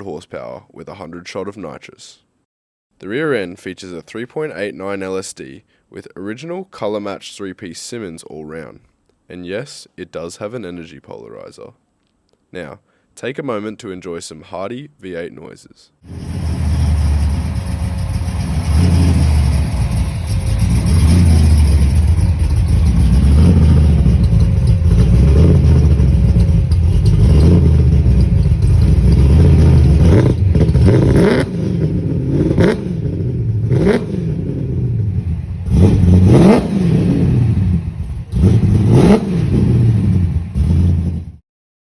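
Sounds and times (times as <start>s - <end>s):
car engine running and revving: 16.1s - 41.3s.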